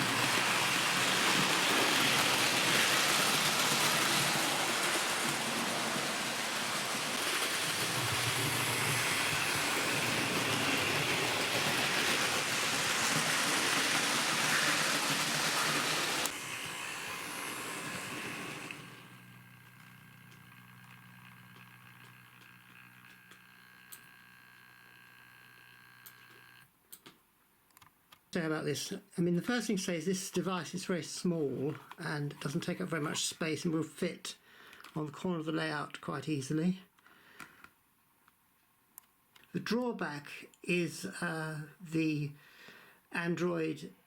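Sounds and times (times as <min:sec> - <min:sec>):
model train whirring: 0:00.0 - 0:26.6.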